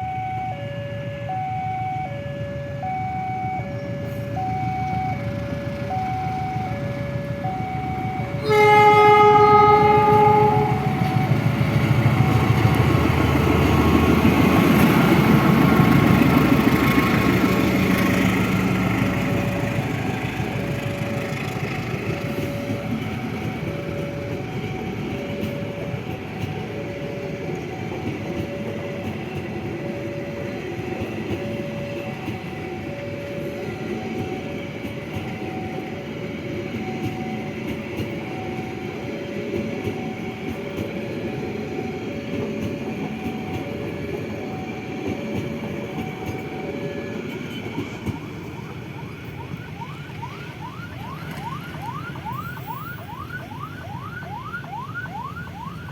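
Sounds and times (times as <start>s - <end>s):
train rumbling on rails: 0.0s - 55.9s
electronic siren yelping: 48.2s - 55.9s.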